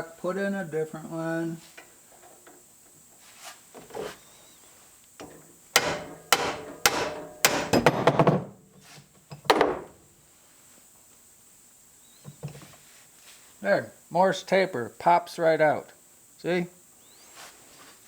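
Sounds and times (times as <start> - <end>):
hammer striking steel wedge: 5.8 - 8.2.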